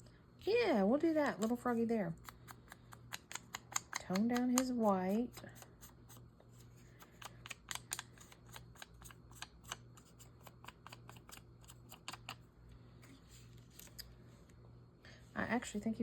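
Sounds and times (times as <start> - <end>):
scissors snipping paper: 1.2 - 6.0, 6.9 - 12.4.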